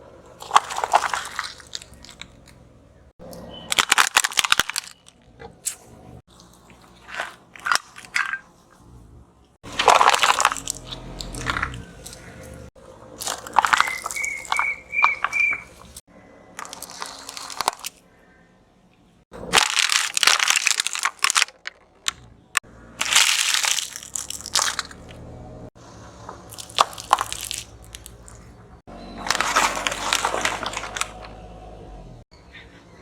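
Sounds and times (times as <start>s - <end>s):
tyre crushing brittle objects: 0.3s - 8.5s, 9.6s - 18.1s, 19.4s - 25.3s, 25.9s - 31.7s.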